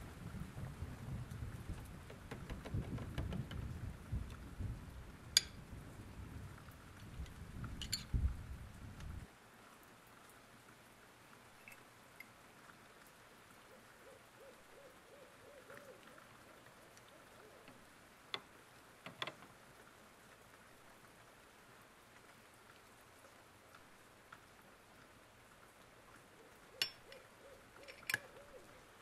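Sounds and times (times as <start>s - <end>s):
small clicks: 1.7s - 4.4s, 26.8s - 28.4s
faint wavering hoot-like tone: 13.7s - 17.7s.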